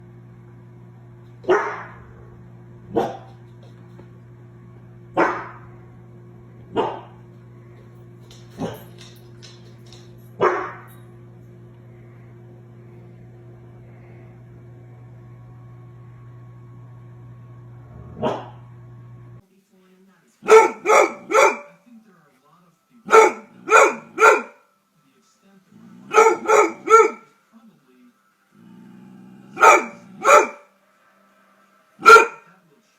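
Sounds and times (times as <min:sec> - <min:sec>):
steady low hum: 0:00.0 - 0:19.5
dog barking: 0:01.4 - 0:02.1, 0:02.9 - 0:03.4, 0:05.2 - 0:05.6, 0:06.7 - 0:07.2, 0:10.4 - 0:10.9, 0:18.2 - 0:18.6, 0:20.4 - 0:21.8, 0:23.1 - 0:24.6, 0:26.0 - 0:27.3, 0:29.5 - 0:30.7, 0:32.0 - 0:32.5.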